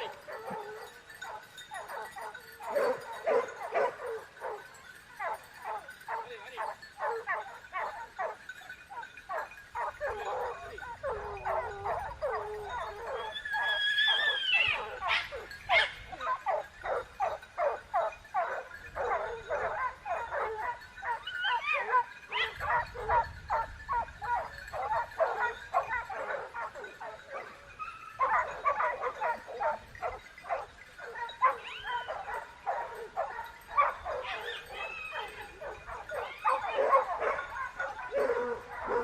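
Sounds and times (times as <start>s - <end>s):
dog yelping and whining: 9.3s - 17.0s, 23.9s - 39.0s.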